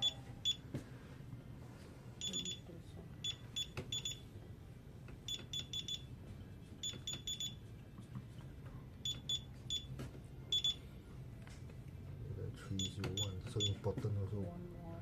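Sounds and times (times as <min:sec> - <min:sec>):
alarm keypad key-press beeps: 0:00.0 - 0:00.6, 0:02.2 - 0:02.6, 0:03.2 - 0:04.3, 0:05.3 - 0:06.1, 0:06.8 - 0:07.6, 0:09.0 - 0:09.9, 0:10.5 - 0:10.9, 0:12.8 - 0:13.8.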